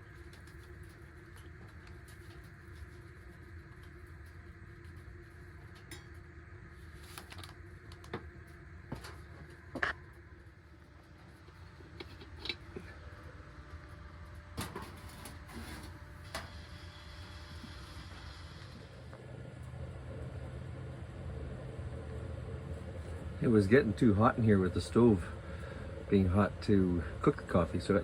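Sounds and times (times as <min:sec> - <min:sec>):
camp stove burner rushing: 0:14.6 - 0:20.4.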